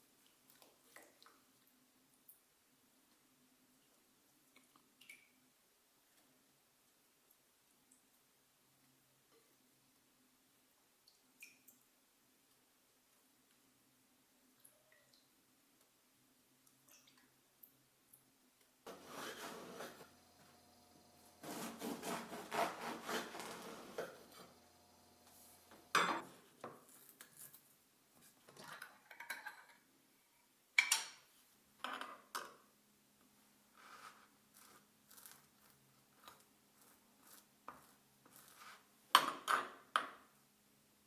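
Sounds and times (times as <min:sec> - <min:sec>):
objects rubbing and scraping: 0:18.9 - 0:26.3
dishes and utensils clinking: 0:25.9 - 0:26.4.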